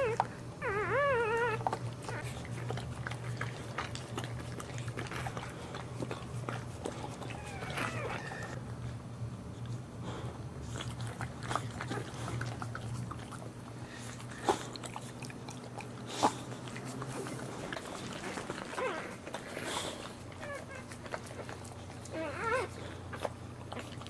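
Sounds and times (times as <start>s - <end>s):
dog mouth and body sounds: 0.0s - 8.6s, 10.6s - 24.0s.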